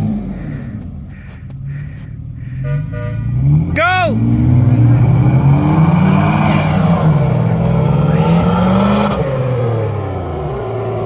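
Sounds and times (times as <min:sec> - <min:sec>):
engine revving hard: 0:02.5 - 0:11.0.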